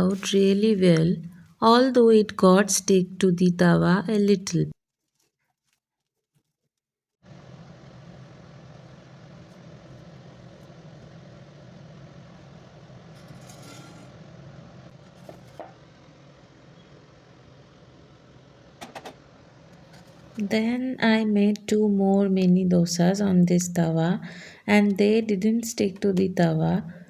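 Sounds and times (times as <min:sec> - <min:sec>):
gas stove hum and hiss: 0:07.3 - 0:27.0.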